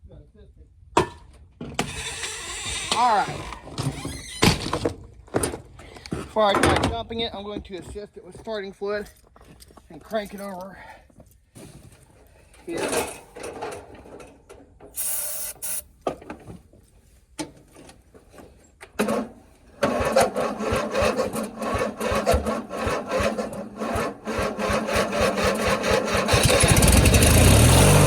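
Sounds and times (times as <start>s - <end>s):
starter cranking engine: 1.8s - 4.2s, 19.0s - 28.0s
spray hiss: 15.0s - 15.8s
mower engine running: 19.0s - 28.0s.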